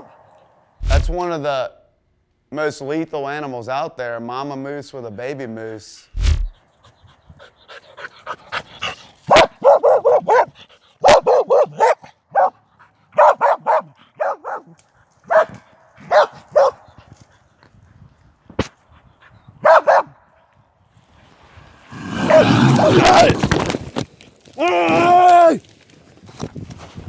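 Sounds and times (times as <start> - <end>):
dog barking: 9.3 - 12.6, 13.2 - 16.9, 19.6 - 20.2.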